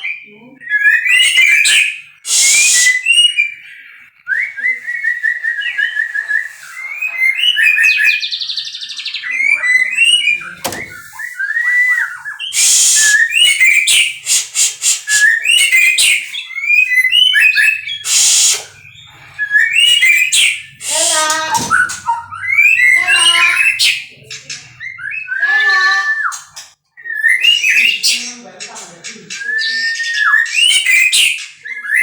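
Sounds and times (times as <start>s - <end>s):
bird singing whistled phrases: 0.6s - 14.4s, 15.0s - 24.1s, 24.8s - 28.2s, 29.4s - 32.0s
harsh rasping bird calls: 12.3s - 28.4s.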